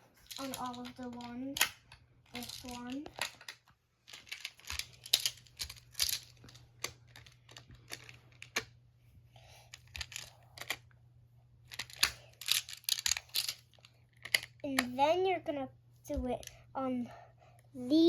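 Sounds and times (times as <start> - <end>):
plastic tiles clicking together: 0.3 - 8.7, 11.7 - 15.0.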